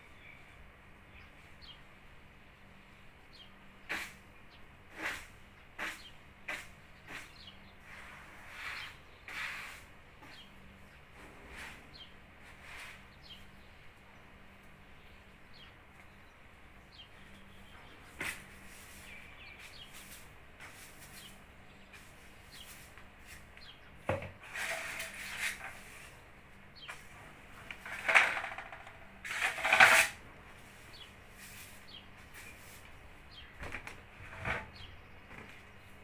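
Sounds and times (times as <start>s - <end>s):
scraping or rustling: 11.1s - 13.6s, 17.7s - 36.0s.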